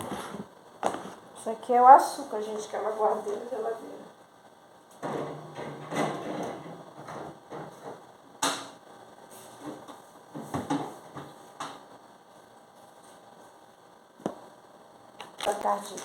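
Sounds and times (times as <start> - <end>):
food containers knocking and clattering: 5.0 - 8.7, 9.7 - 11.9.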